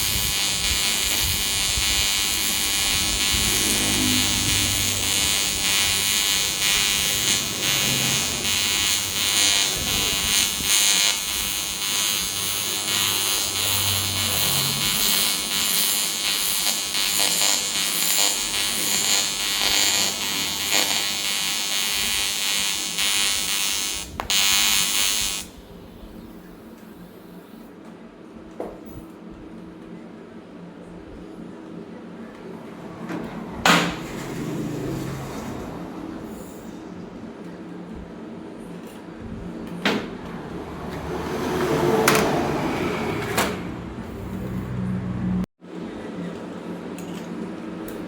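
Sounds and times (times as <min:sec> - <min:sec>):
welding arc buzzing: 0:00.0 - 0:25.8, 0:43.5 - 0:45.5.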